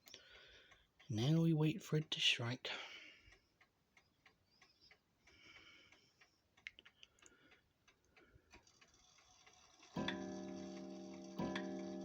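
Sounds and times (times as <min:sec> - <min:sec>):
clock ticking: 0:00.0 - 0:12.0
clock gong ringing: 0:10.0 - 0:12.0.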